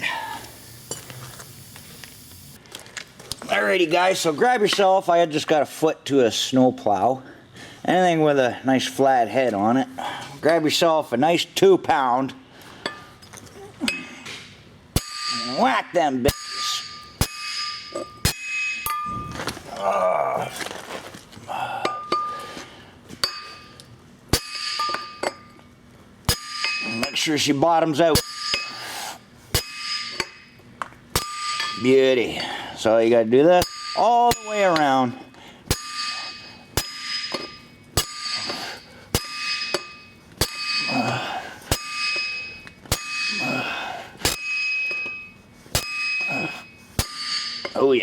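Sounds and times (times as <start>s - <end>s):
hammer striking steel driver: 15.0s - 19.3s, 24.3s - 25.5s, 26.3s - 27.3s, 28.2s - 28.8s, 29.5s - 30.6s, 31.2s - 32.0s, 33.6s - 35.0s, 35.7s - 43.6s, 44.2s - 47.9s.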